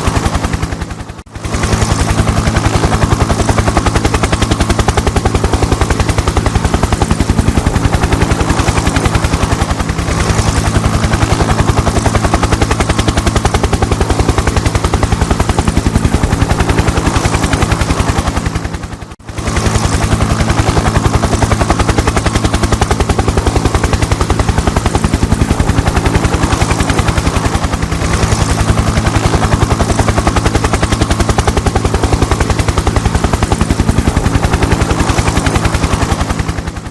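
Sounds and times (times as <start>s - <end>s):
helicopter engine hum: 0.0s - 36.9s
helicopter rotor chopping: 0.0s - 36.9s.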